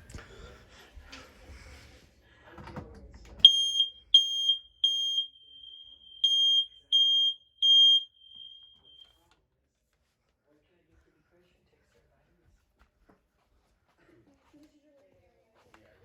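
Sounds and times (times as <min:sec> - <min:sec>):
smoke alarm beeping: 0:03.4 - 0:09.0.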